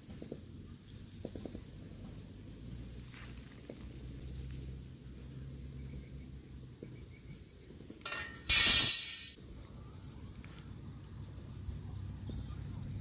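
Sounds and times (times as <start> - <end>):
loud crash with clattering: 8.1 - 9.4.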